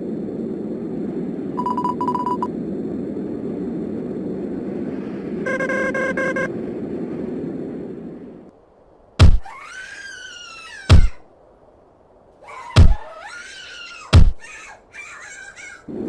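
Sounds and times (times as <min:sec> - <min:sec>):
low rushing noise: 0:00.0 - 0:09.2
rapid electronic beeping: 0:01.6 - 0:02.5, 0:05.5 - 0:06.5.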